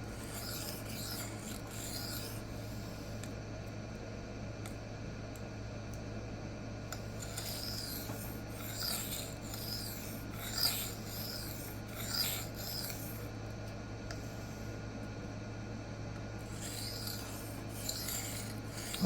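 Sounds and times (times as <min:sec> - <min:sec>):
knife scraping on sharpening plate: 0:00.2 - 0:02.4, 0:07.2 - 0:13.2, 0:16.5 - 0:19.0.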